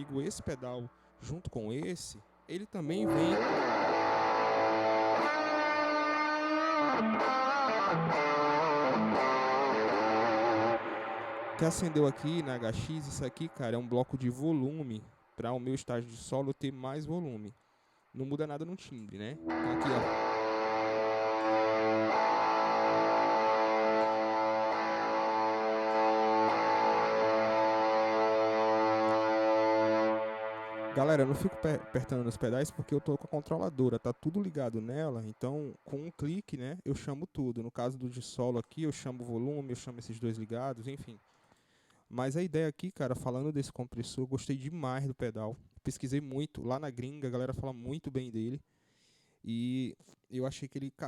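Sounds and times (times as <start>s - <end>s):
overdriven electric guitar lead: 3.0s - 13.5s, 19.4s - 33.4s.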